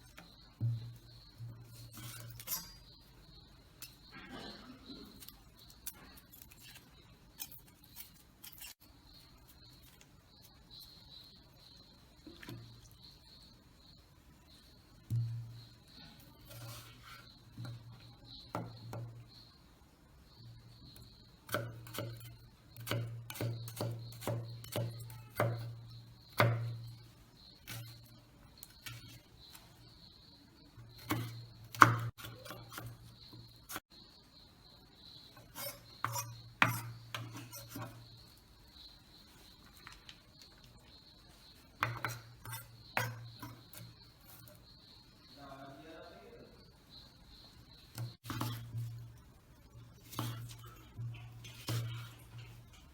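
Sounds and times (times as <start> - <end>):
knife chopping on cutting board: 21.5 - 25.7, 26.3 - 26.8, 31.0 - 32.9.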